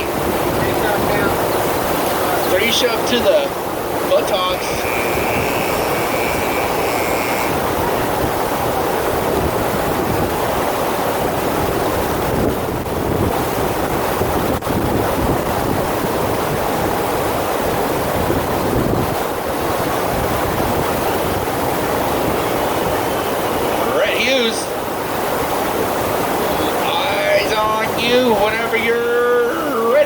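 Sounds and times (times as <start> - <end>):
rushing water: 0.0 - 30.0.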